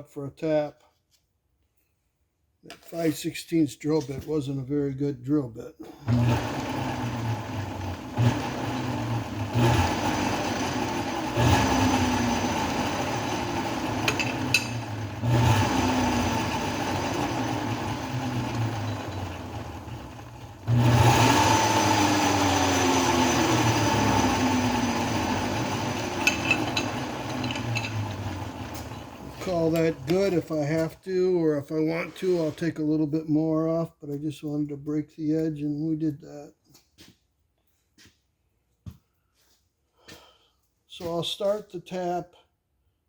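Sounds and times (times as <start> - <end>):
metal lathe humming: 6.1 - 30.4.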